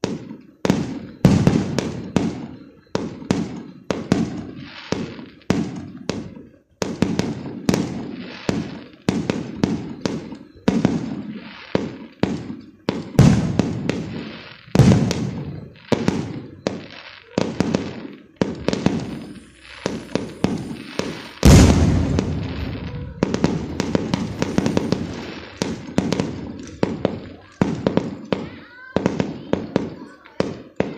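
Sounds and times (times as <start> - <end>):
fireworks bangs and crackles: 0.0 - 30.9
heavy firework booms: 12.3 - 16.8, 17.4 - 29.9.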